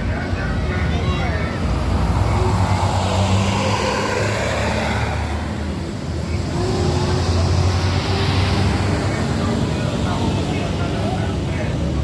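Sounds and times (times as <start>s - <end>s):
bus passing by: 0.0s - 12.0s.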